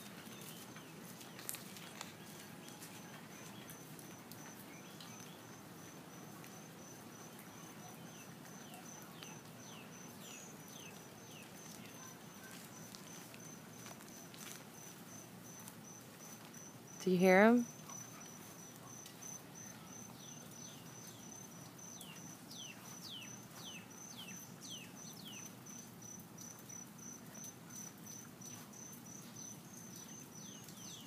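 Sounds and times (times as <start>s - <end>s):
crickets trilling: 3.0s - 31.0s
bird chirping: 7.2s - 13.6s, 17.6s - 26.9s, 29.2s - 31.0s.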